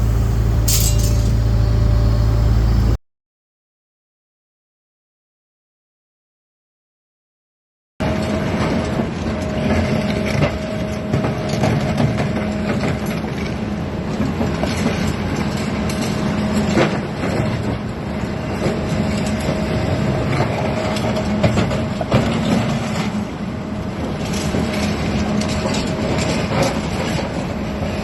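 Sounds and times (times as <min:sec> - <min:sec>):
metal clanks: 0:00.0 - 0:01.7
excavator hydraulic attachment working: 0:00.0 - 0:03.0, 0:08.0 - 0:28.0.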